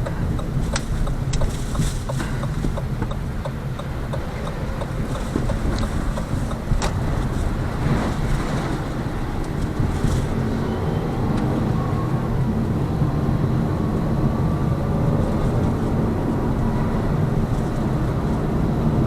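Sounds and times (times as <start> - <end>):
road and tyre rumble: 0.0 - 19.0.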